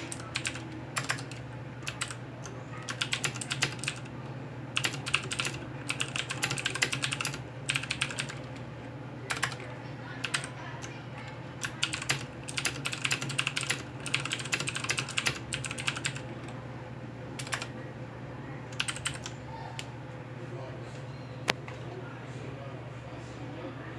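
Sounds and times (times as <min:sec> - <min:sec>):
mechanical keyboard typing: 0:00.0 - 0:04.1, 0:04.8 - 0:08.6, 0:09.3 - 0:10.9, 0:11.6 - 0:16.6, 0:17.4 - 0:17.7, 0:18.7 - 0:19.3.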